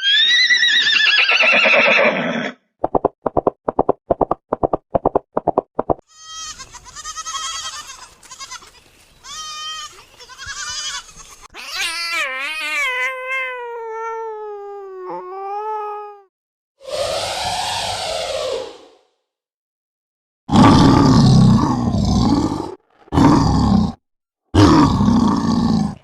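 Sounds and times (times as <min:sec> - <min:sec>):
animal bleating: 0:06.1 - 0:12.8.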